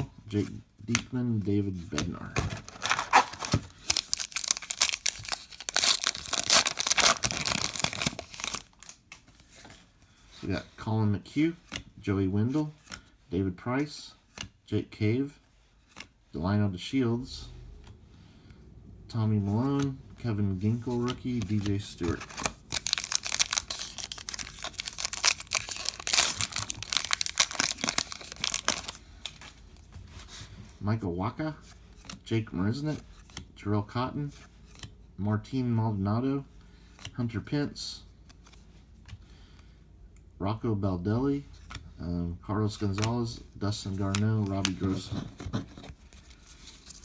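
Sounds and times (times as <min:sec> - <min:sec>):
wrapper tearing and crinkling: 0:02.5 - 0:09.0, 0:22.1 - 0:29.5.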